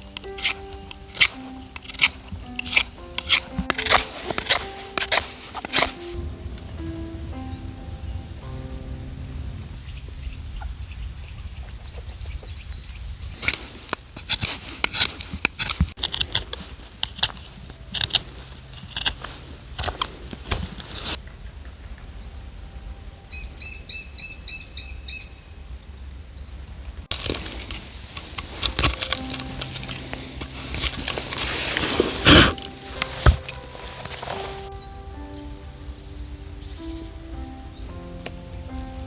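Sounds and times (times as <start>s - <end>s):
birds chirping: 0.0s - 14.8s, 17.4s - 39.0s
flapping or rustling: 13.3s - 21.2s, 27.1s - 34.7s.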